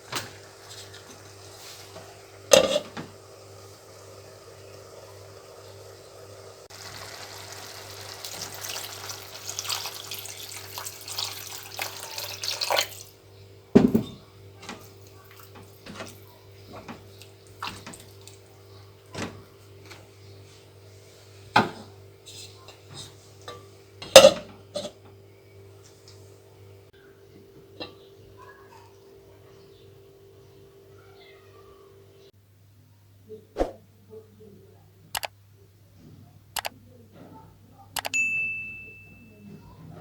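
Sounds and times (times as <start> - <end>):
utensils clinking on dishes: 2.5 - 3.0.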